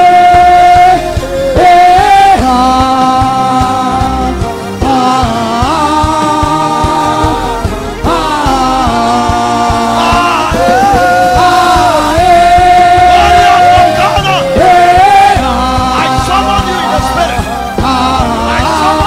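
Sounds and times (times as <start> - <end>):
gospel worship music: 0.0 - 19.0.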